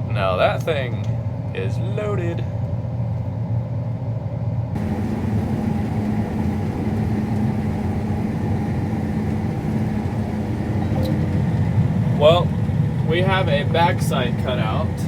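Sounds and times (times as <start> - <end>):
combine harvester droning: 4.7 - 15.0.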